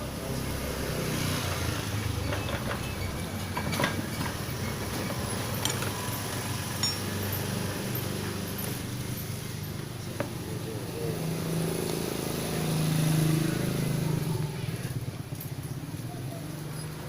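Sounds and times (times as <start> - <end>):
metal tools clinking: 2.3 - 10.1.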